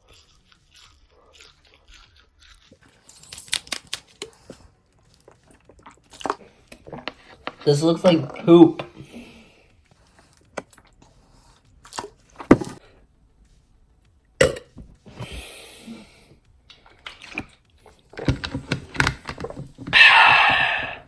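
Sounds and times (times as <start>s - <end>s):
objects knocking and thudding: 12.4s - 12.8s, 18.1s - 20.0s.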